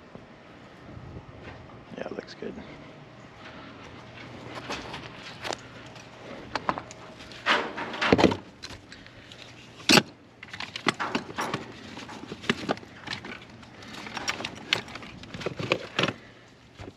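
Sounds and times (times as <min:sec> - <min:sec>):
clinks and knocks of handling: 0:04.6 - 0:16.2.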